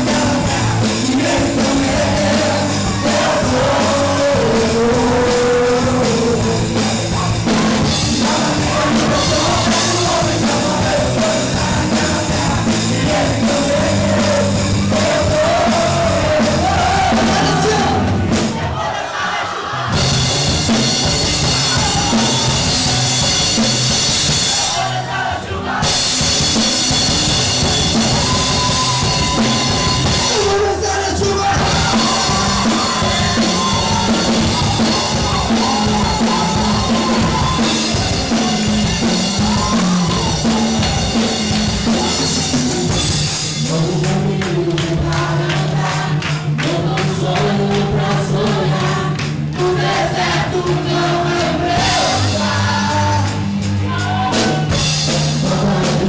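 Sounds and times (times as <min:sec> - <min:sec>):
person singing: 0:00.0 - 0:18.1, 0:30.1 - 0:56.0
drum kit: 0:00.0 - 0:56.0.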